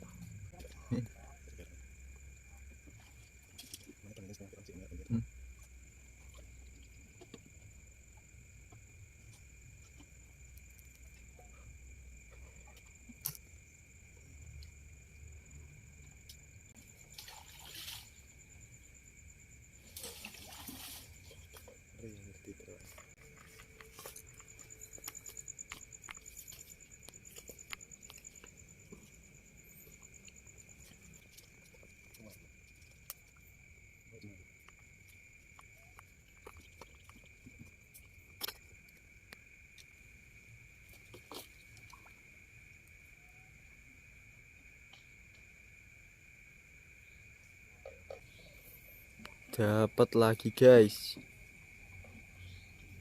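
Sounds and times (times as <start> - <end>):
night insects trilling: 0.0 - 53.0
shallow water splashing: 16.8 - 18.7, 19.7 - 21.8.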